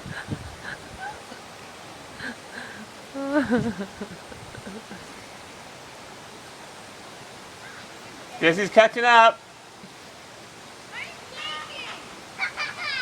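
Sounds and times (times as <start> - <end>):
floodwater rushing: 0.0 - 13.0.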